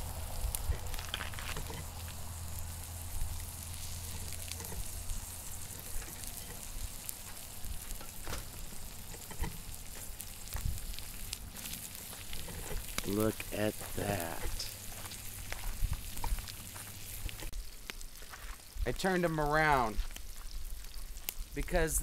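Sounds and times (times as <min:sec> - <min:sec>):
fish sizzling in a skillet: 0:00.0 - 0:22.0.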